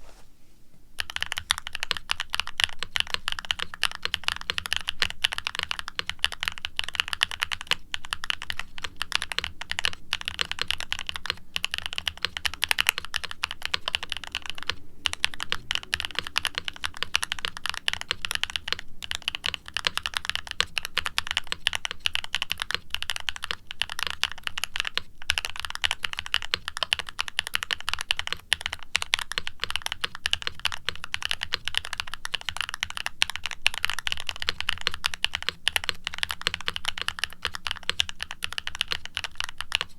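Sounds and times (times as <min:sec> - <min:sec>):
typing on mechanical keyboard: 0:01.0 - 0:39.9.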